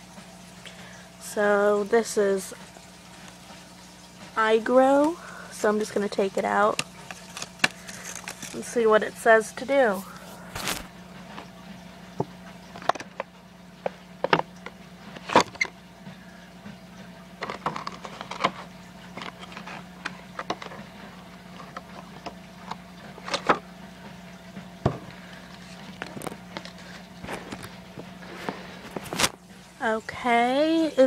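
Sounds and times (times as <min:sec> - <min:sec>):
steady low hum: 0:00.0 - 0:31.0
packaging being handled and opened: 0:06.8 - 0:08.6, 0:10.0 - 0:11.4, 0:17.4 - 0:22.3, 0:25.6 - 0:29.4.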